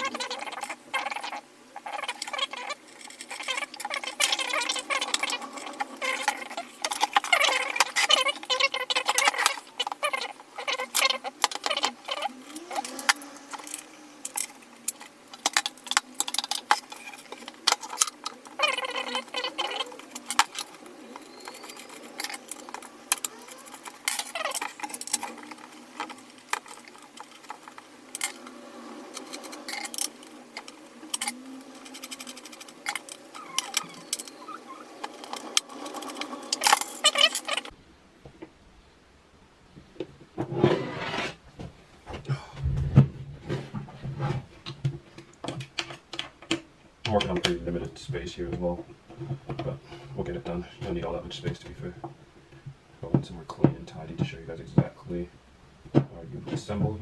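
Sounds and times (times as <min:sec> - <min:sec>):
short squeaks: 0:00.0 - 0:37.7
small metal clicks: 0:00.0 - 0:37.7
scraping: 0:00.0 - 0:37.8, 0:40.4 - 0:41.4.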